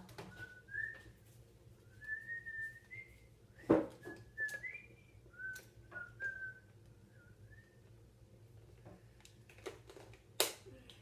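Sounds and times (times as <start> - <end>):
person whistling a tune: 0.3 - 1.1, 2.0 - 6.6.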